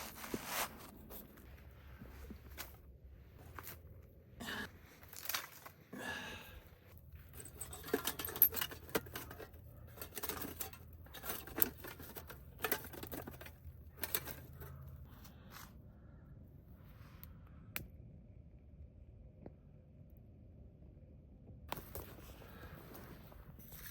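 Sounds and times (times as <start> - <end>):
objects being handled: 6.6 - 15.7, 21.7 - 23.9.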